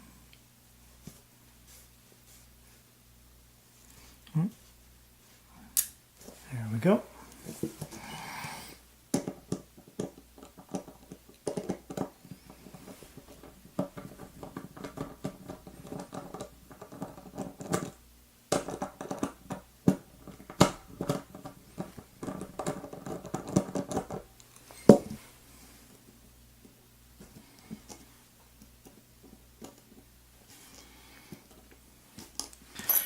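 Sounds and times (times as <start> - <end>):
metal lock parts clicking and scraping: 32.7 - 33.0.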